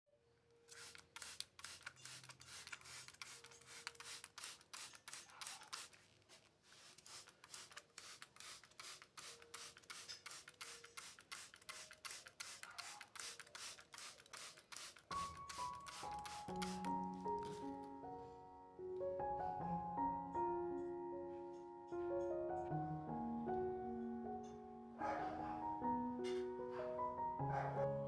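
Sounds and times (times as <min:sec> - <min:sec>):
faint rhythmic rubbing strokes: 0:00.7 - 0:17.6.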